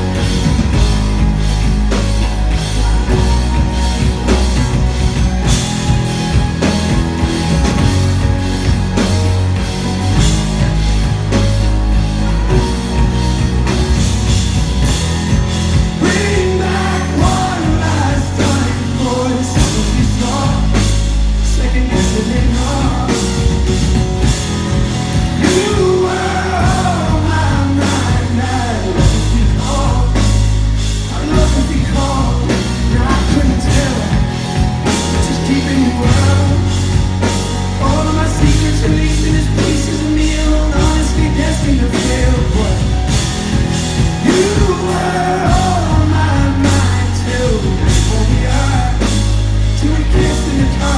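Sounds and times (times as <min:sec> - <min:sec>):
drums beating: 0:00.0 - 0:50.9
heavy bass line: 0:00.0 - 0:50.9
live pop-rock band: 0:00.0 - 0:50.9
person singing: 0:15.7 - 0:50.9.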